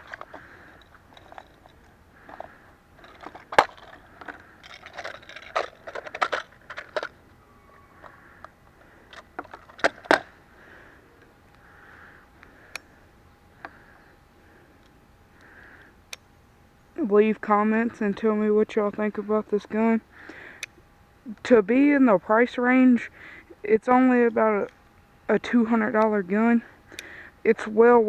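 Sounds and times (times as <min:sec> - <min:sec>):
revolver cylinder clicks: 0:12.4 - 0:13.0, 0:14.8 - 0:16.4, 0:20.2 - 0:21.5, 0:26.8 - 0:27.6.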